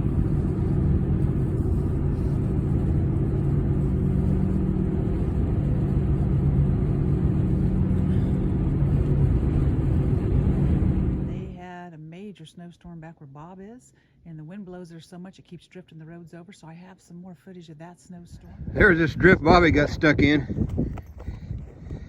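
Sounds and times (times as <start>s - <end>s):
truck engine and road drone: 0.0s - 11.6s, 18.3s - 22.0s.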